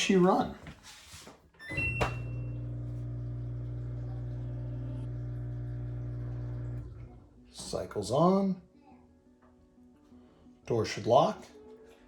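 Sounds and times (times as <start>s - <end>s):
washing machine electric hum: 1.6s - 8.1s.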